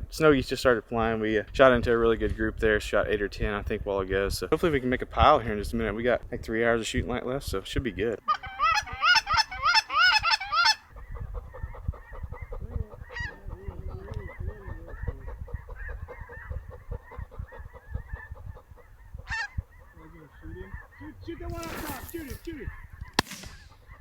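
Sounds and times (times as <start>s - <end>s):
distant flock of geese calling: 8.1s - 24.0s
geese honking: 8.2s - 24.0s.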